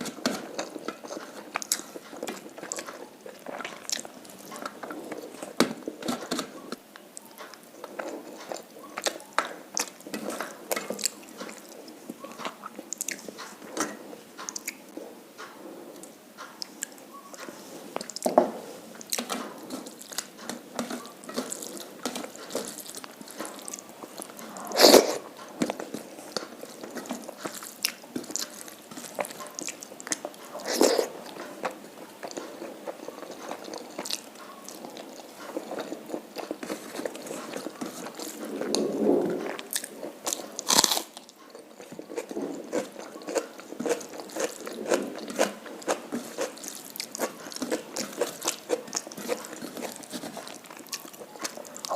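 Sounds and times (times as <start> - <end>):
wet chewing: 0.0 - 15.0, 19.0 - 51.9
crunchy bites: 39.4 - 51.9.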